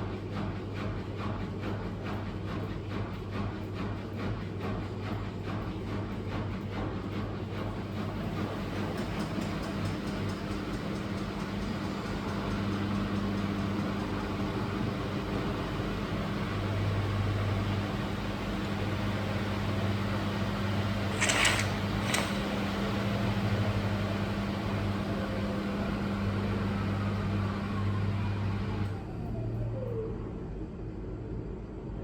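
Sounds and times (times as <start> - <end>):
washing machine motor hum: 8.0 - 28.8
sharp clicks: 21.2 - 22.5.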